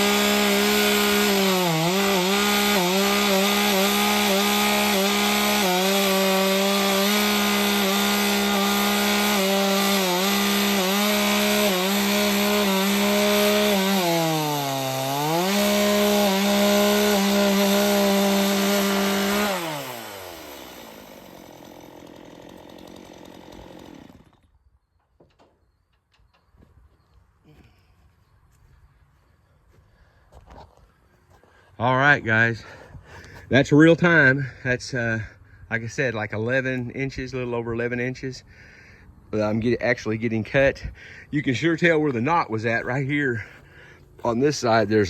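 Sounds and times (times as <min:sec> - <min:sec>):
chainsaw ripping a log: 0:00.0 - 0:24.5.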